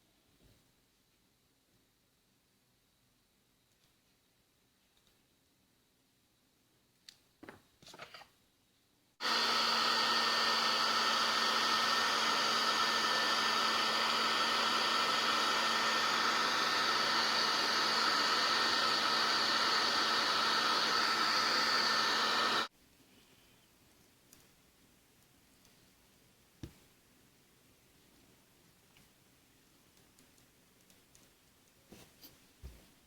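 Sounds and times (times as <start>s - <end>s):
hot-air blower humming: 9.2s - 22.7s.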